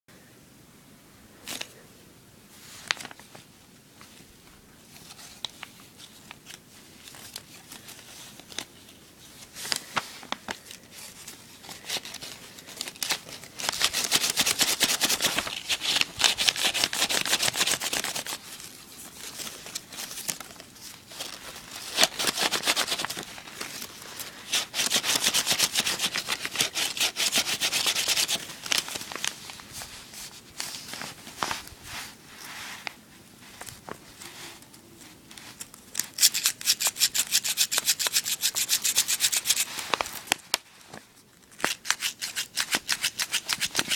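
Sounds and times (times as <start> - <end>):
paper being rubbed along folds: 9.6 - 18.5, 21.1 - 32.9, 36.1 - 40.6.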